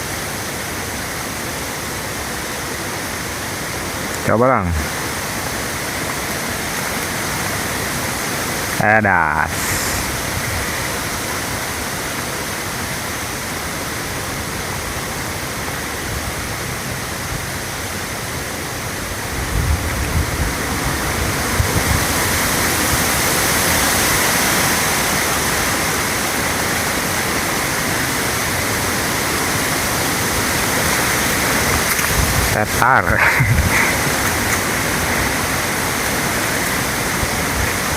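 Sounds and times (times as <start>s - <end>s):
flowing water rushing: 0.0s - 37.9s
wind buffeting microphone: 19.0s - 24.6s, 30.2s - 37.9s.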